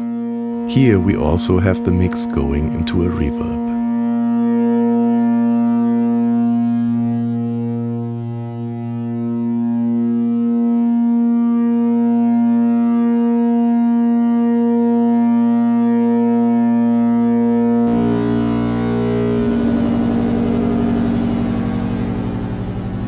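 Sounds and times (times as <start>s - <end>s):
synthesizer drone: 0.6s - 4.2s, 17.9s - 23.0s.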